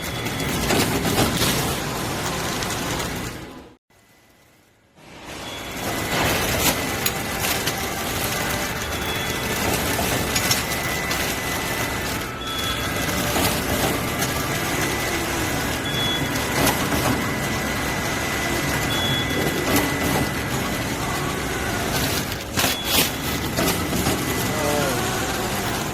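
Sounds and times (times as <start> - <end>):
packaging machine humming: 0.0 - 25.9
short high beep: 5.3 - 15.1, 18.2 - 25.8.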